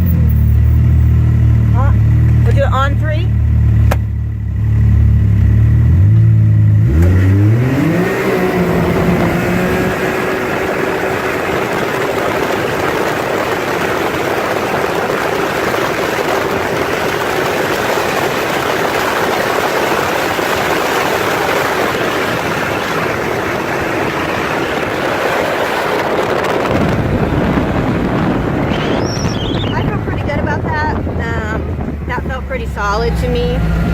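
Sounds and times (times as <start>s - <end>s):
engine at full throttle: 0.0s - 33.9s
wind rush on microphone: 7.6s - 33.9s.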